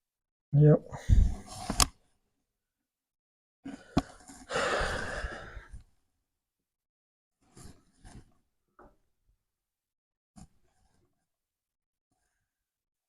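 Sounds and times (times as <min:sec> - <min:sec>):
man sighing: 0:04.5 - 0:05.6.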